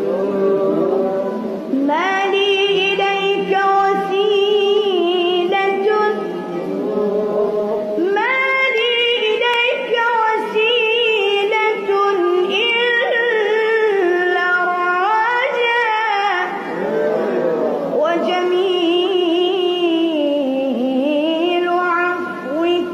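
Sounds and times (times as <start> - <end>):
solo voice singing devotional song: 0.0 - 22.9.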